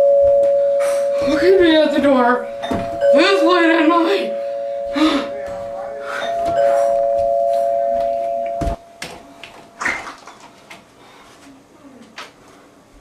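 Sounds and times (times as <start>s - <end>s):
doorbell click: 0.0s - 1.6s, 2.6s - 5.2s, 6.2s - 9.2s
two-tone doorbell chime: 0.0s - 9.8s.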